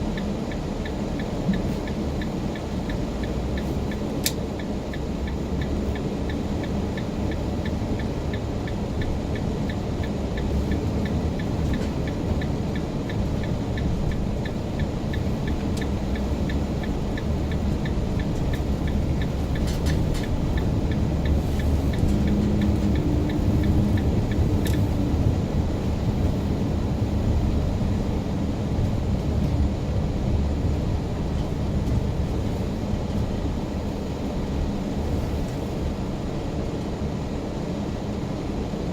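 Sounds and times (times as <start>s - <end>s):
car engine and road noise: 0.0s - 38.9s
regular ticking: 0.1s - 25.0s.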